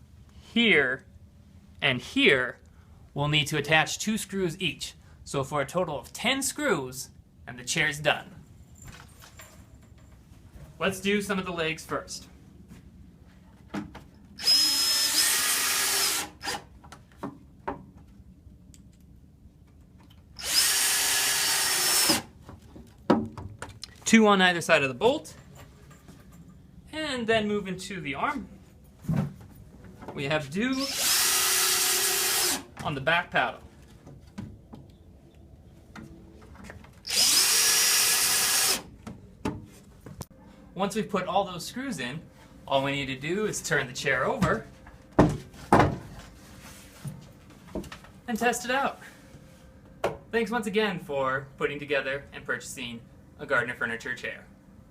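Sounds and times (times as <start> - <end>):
power drill driving screws: 14.4 - 16.6, 20.4 - 22.3, 30.8 - 32.6, 37.0 - 38.9.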